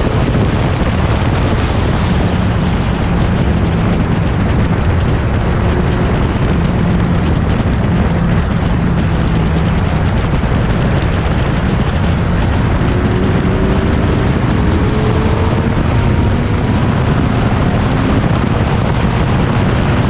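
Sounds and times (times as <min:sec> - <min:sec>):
racing car engines at speed: 0:00.0 - 0:20.0.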